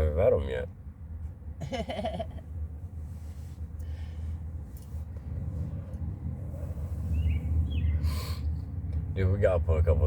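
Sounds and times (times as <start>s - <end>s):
low steady rumble: 0.0s - 10.0s
bird chirp: 7.0s - 8.4s.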